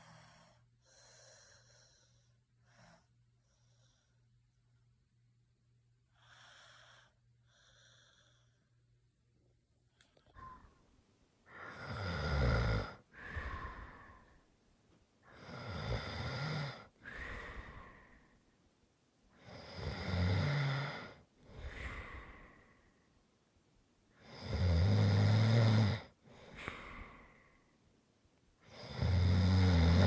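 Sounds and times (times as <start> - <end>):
person snoring: 11.5 - 14.4, 15.3 - 18.0, 19.4 - 22.7, 24.2 - 27.4, 28.6 - 30.0.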